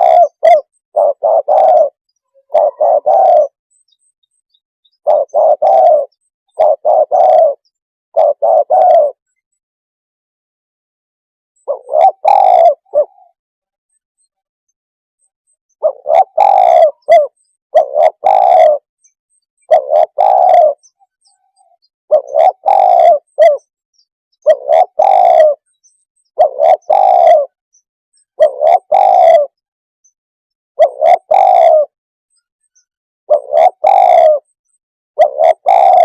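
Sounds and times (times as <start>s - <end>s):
dove cooing: 0.0s - 3.6s, 5.0s - 9.3s, 11.6s - 13.4s, 15.8s - 18.9s, 19.6s - 23.7s, 24.4s - 25.7s, 26.3s - 27.6s, 28.4s - 29.6s, 30.8s - 32.0s, 33.3s - 34.6s, 35.2s - 36.0s.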